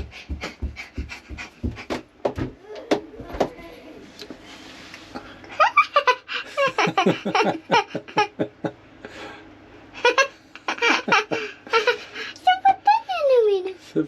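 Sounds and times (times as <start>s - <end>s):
child giggling: 5.6s - 8.6s, 10.0s - 13.5s.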